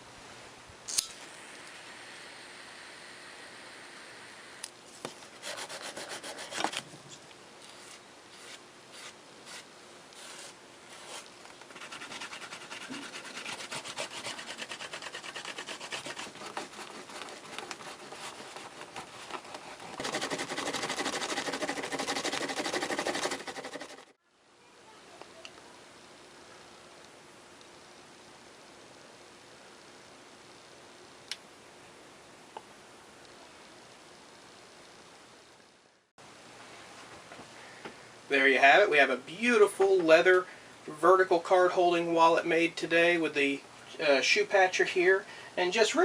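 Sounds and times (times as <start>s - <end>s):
rubbing strokes on leather: 5.2s - 6.8s, 7.6s - 24.2s.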